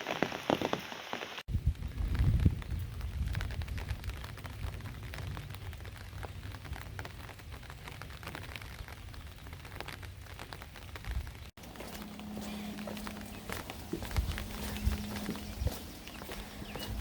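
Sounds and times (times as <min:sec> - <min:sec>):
raindrops ticking close by: 0:00.0 - 0:17.0
steady rain: 0:00.0 - 0:17.0
low rumble: 0:11.6 - 0:17.0.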